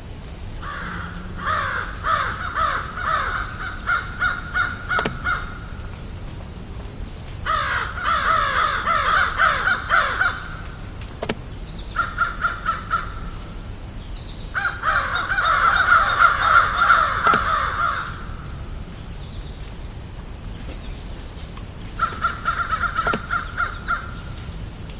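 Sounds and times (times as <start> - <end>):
steady high-pitched hiss: 0.0 - 24.9
crows cawing: 0.6 - 5.9, 7.4 - 10.8, 11.9 - 13.4, 14.6 - 18.6, 22.0 - 24.4.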